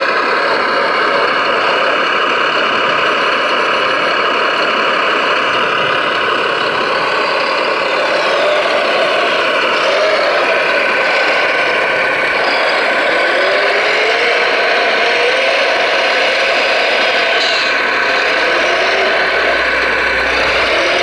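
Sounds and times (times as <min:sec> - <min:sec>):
small motors whining: 0:04.2 - 0:21.0.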